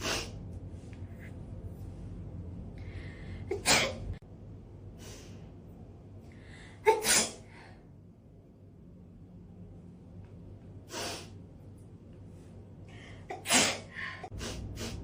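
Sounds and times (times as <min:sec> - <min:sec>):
person sneezing: 0:03.5 - 0:04.1, 0:06.8 - 0:07.5, 0:13.3 - 0:15.0.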